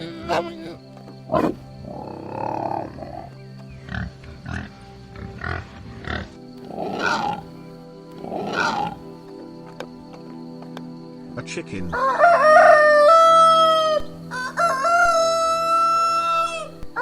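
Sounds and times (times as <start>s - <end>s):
pig grunting: 0.0s - 7.6s, 8.2s - 9.2s
background music: 0.0s - 17.0s
pig squealing: 5.3s - 7.6s, 8.2s - 9.1s.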